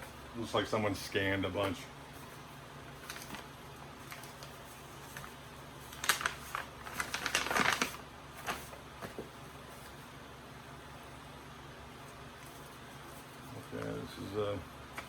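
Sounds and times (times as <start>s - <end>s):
paper rustling: 1.6s - 10.1s, 12.1s - 14.1s.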